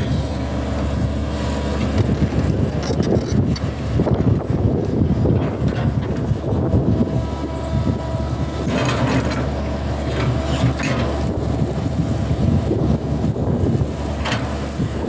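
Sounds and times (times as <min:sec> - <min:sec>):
excavator engine running: 0:00.0 - 0:15.0
metallic clanking and scraping: 0:08.6 - 0:11.6.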